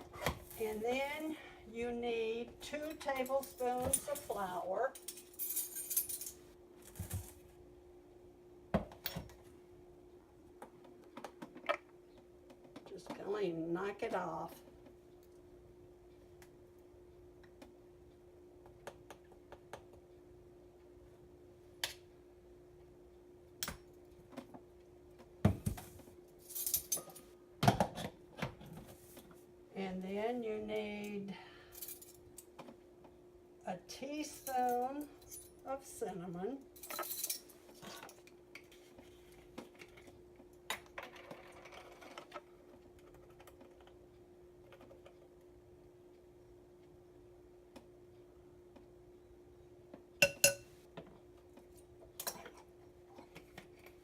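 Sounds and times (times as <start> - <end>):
faint steady hum: 0.0 - 54.0
clatter and rustle: 40.9 - 43.9
utensils tapping on bowls: 50.2 - 50.7.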